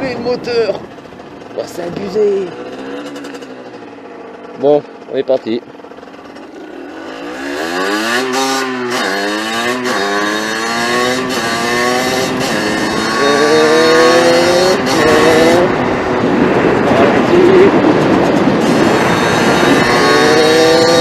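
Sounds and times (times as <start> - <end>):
motorbike engine accelerating: 0.0 - 21.0
wind on microphone: 10.9 - 21.0.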